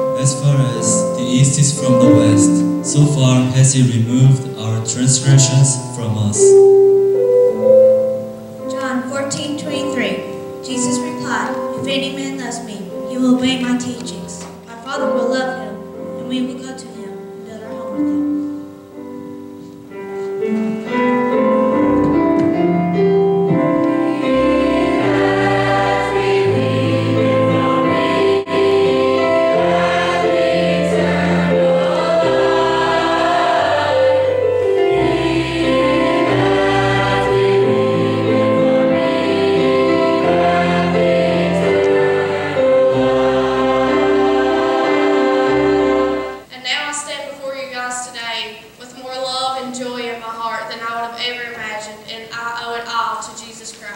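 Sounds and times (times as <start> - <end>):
choir singing gospel song: 0.0 - 8.2, 23.3 - 46.5
instrumental accompaniment: 0.0 - 46.6.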